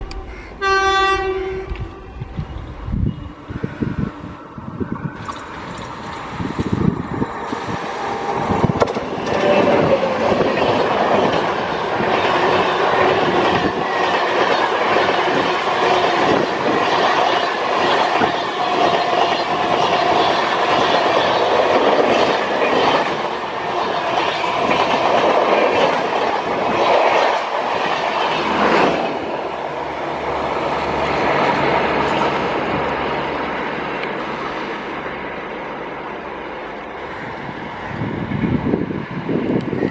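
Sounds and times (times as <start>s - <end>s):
train wheels clicking over rail joints: 5.6s - 35.9s.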